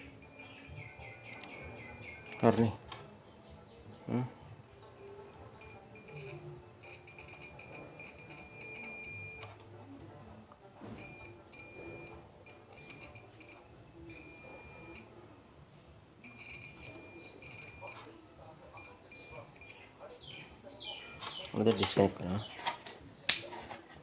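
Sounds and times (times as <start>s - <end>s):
high electronic beeping: 0.0s - 2.8s.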